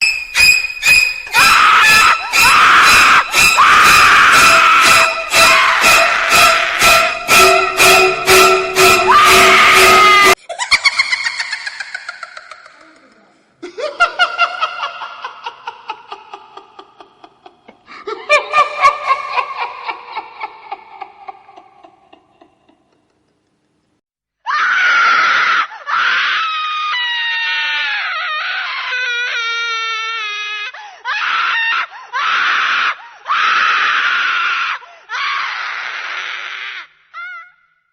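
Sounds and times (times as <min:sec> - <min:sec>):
loud wavering screams: 0:00.0 - 0:10.4.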